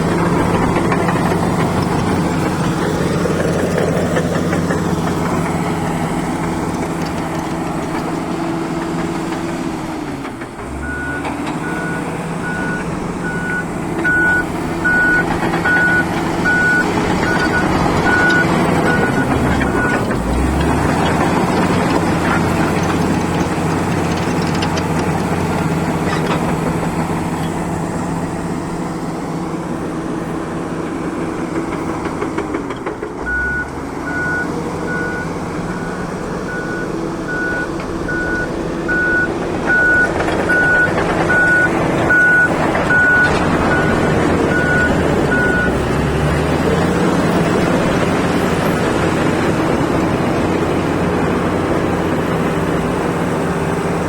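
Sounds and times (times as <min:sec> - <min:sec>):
heavy diesel engine running: 0:00.0 - 0:54.0
reversing alarm beeping: 0:10.8 - 0:20.0, 0:33.2 - 0:45.8.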